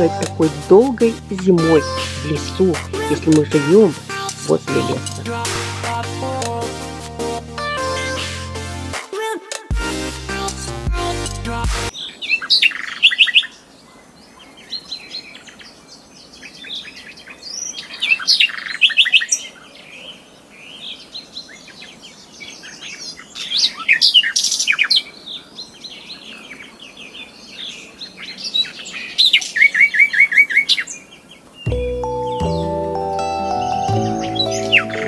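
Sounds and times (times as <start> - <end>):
songbirds chirping and trilling: 0.0 - 9.0, 11.5 - 35.0.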